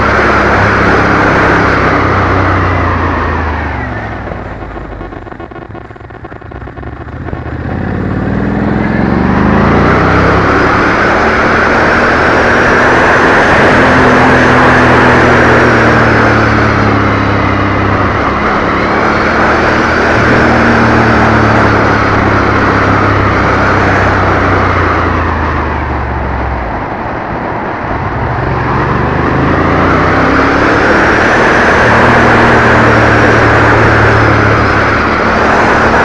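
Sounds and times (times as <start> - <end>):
motorcycle engine running: 0.0 - 36.0
wind noise on microphone: 0.0 - 36.0.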